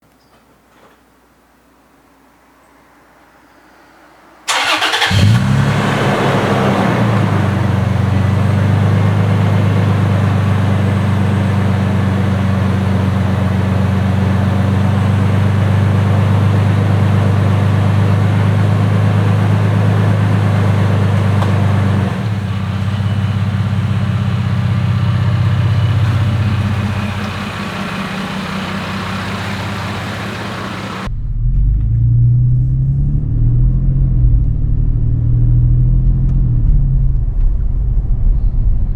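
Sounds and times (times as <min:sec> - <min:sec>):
car engine starting and idling: 0:04.5 - 0:36.7
low rumble: 0:22.2 - 0:38.9.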